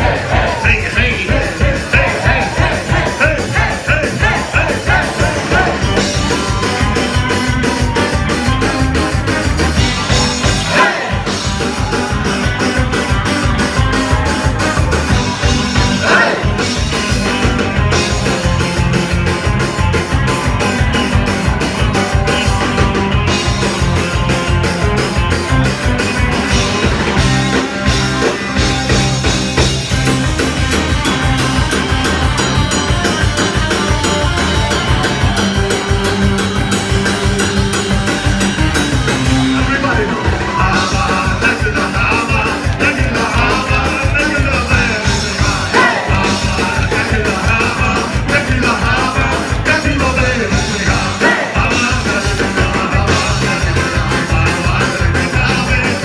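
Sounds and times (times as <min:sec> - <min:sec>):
rock band playing: 0:00.0 - 0:56.0
person singing: 0:15.8 - 0:16.8, 0:39.2 - 0:56.0.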